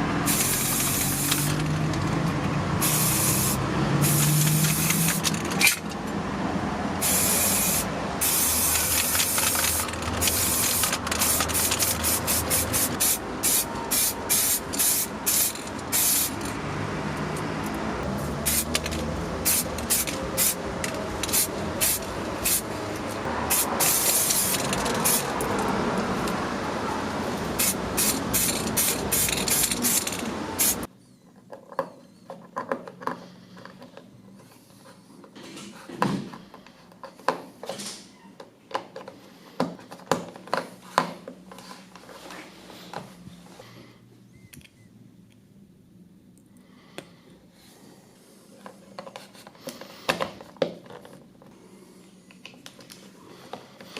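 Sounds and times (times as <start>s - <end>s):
spray paint hissing: 0.2s - 1.7s, 2.8s - 5.8s, 7.0s - 16.5s, 18.2s - 22.8s, 23.5s - 25.6s, 27.5s - 30.9s.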